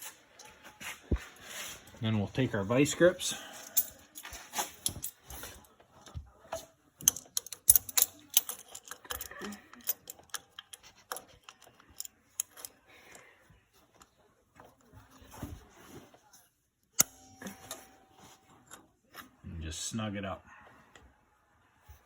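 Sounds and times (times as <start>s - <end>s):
locking pliers clicking: 7.0s - 12.8s.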